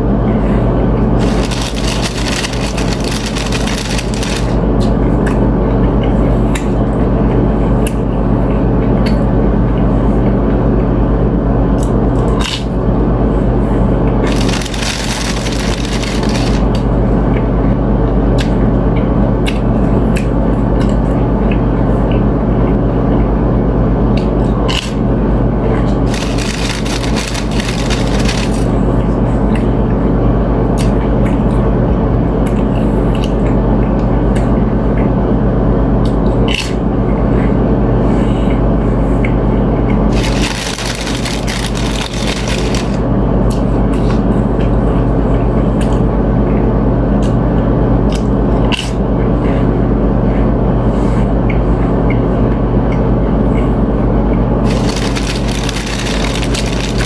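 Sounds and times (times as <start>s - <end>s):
steady low hum: 0.0s - 57.0s
crunching chips and chewing: 1.1s - 4.9s, 11.8s - 12.8s, 14.1s - 16.9s, 24.7s - 25.0s, 25.7s - 29.0s, 39.9s - 44.2s, 54.6s - 57.0s.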